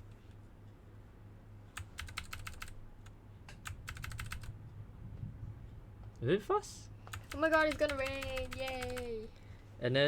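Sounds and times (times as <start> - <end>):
mechanical keyboard clicky keystrokes: 1.8 - 2.8, 3.6 - 4.5, 7.1 - 9.1.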